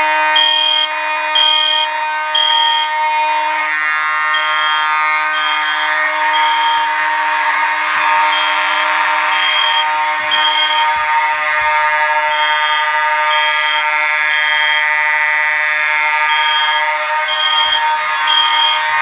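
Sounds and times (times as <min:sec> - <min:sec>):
fire alarm buzzing horn: 0:00.0 - 0:19.0
high alarm beeps: 0:00.4 - 0:11.0, 0:16.2 - 0:19.0.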